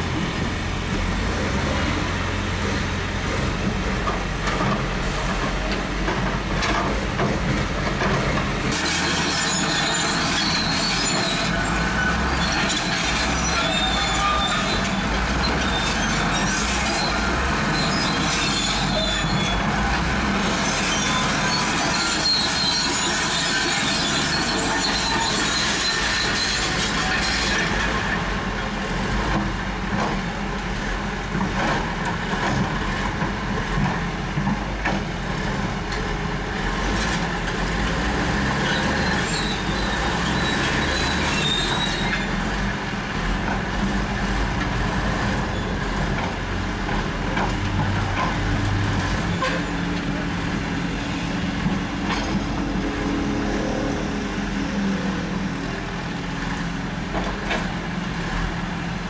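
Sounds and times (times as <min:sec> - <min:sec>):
diesel engine running: 0:00.0 - 0:59.0
steel tracks clanking and squealing: 0:00.0 - 0:59.0.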